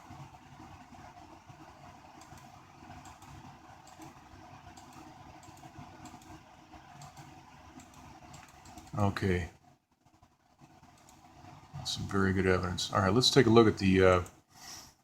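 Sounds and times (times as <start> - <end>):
computer keyboard clicks: 2.2 - 9.0.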